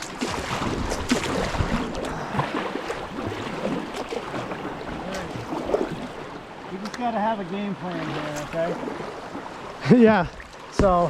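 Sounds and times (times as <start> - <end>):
river water rushing: 0.0 - 10.8
sharp water splashes: 0.0 - 11.0.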